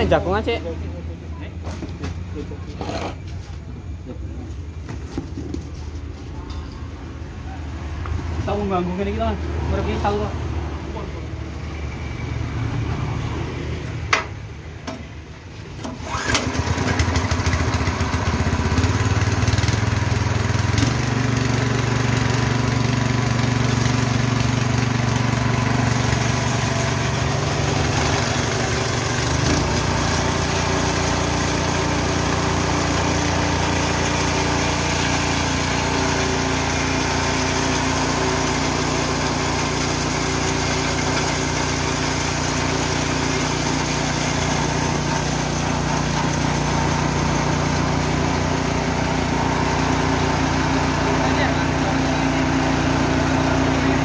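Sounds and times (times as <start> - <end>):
engine-driven mill running: 15.8 - 54.0.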